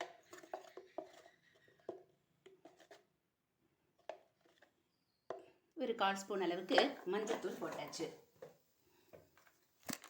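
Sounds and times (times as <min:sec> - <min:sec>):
spoon tapping kitchen vessels: 0:06.5 - 0:08.6.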